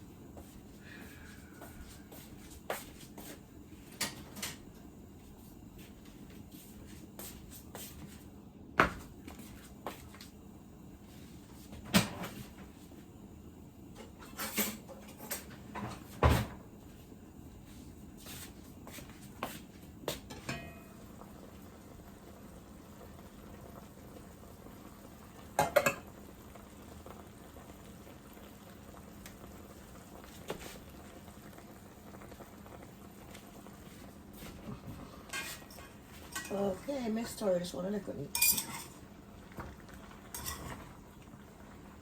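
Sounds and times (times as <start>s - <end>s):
faint steady hum: 0.0s - 42.0s
pots and utensils clattering: 3.9s - 4.6s, 14.0s - 16.6s, 20.2s - 21.0s, 25.6s - 26.1s, 34.5s - 37.4s, 38.3s - 39.0s, 39.6s - 41.0s.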